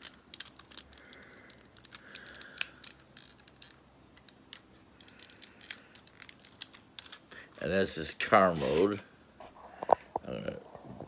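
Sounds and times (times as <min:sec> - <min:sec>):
plastic toy parts clicking: 0:00.0 - 0:07.3.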